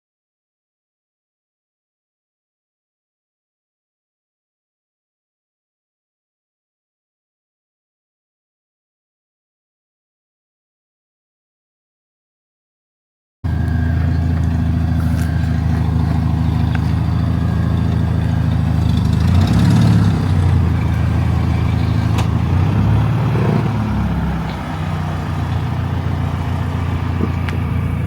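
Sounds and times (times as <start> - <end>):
car engine running: 13.5 - 28.0.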